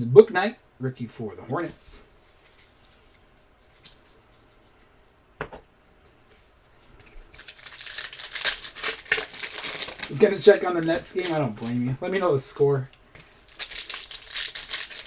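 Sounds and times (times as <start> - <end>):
foil wrappers crinkling: 6.8 - 15.0.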